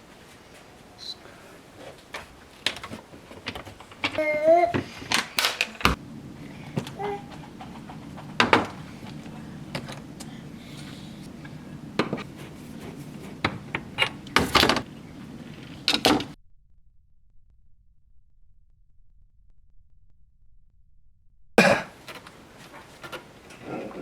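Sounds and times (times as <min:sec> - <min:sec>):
steady low hum: 0:00.0 - 0:24.0
parts clicking and clattering: 0:01.8 - 0:16.4, 0:21.9 - 0:24.0.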